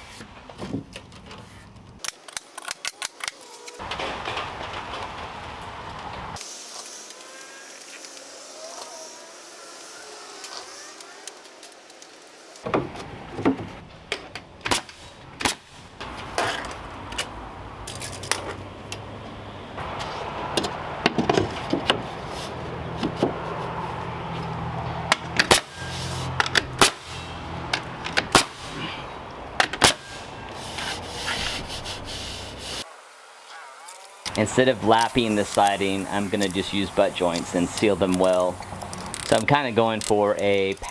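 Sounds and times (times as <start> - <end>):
rubbing and scraping: 29.8 - 32.9, 33.5 - 40.9.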